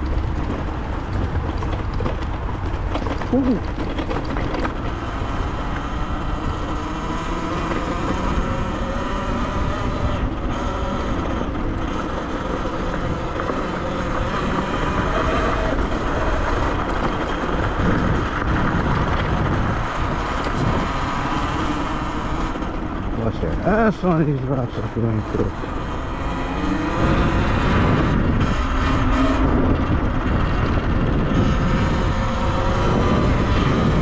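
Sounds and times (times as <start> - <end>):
wind rushing over microphone: 0.0 - 34.0
electric motor whine: 4.2 - 34.0.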